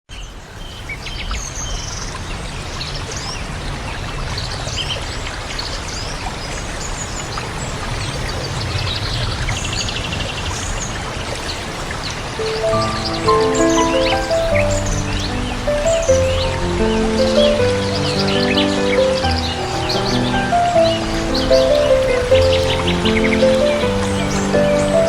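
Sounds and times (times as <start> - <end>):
rain falling: 12.2 - 25.0
bird chirps and calls: 12.4 - 25.0.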